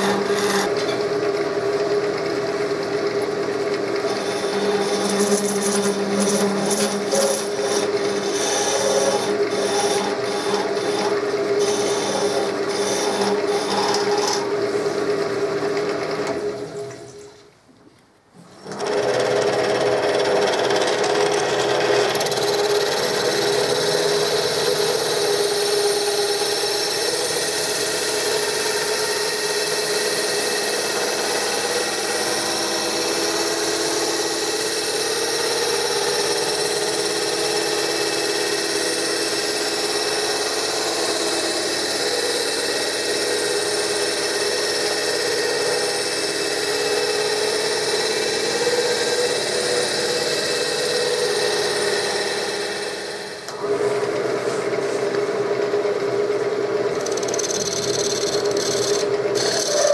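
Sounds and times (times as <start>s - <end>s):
wood lathe running: 0.0s - 16.8s, 18.6s - 54.5s, 55.4s - 59.9s
turning tool cutting wood: 0.0s - 17.2s, 18.6s - 53.9s, 56.9s - 59.9s.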